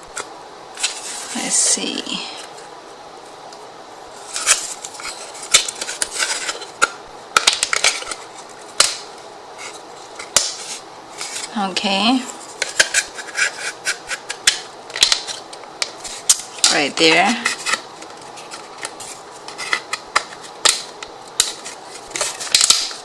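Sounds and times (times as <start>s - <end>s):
wood pieces clicking and knocking: 5.6s - 8.2s, 19.6s - 23.0s.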